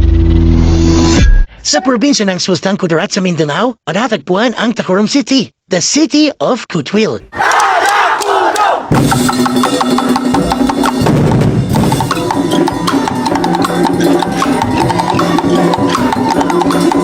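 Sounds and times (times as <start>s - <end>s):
wood block strikes: 8.2s - 17.0s
percussion music with drums: 8.9s - 17.0s
sustained pitched tones: 11.8s - 17.0s.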